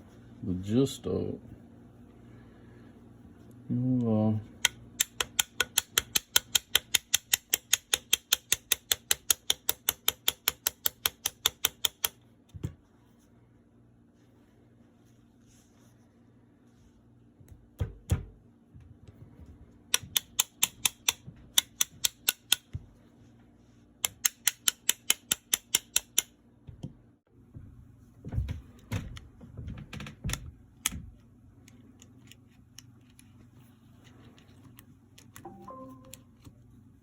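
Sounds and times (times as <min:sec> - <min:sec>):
rapid sharp metallic clicks: 0:04.6 - 0:12.2, 0:19.9 - 0:22.7, 0:24.0 - 0:26.3.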